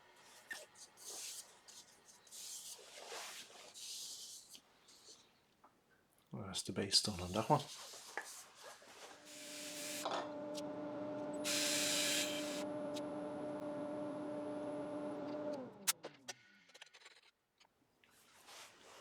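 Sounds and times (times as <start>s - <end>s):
lathe motor humming: 9.3s - 15.8s
loud hiss: 11.4s - 12.6s.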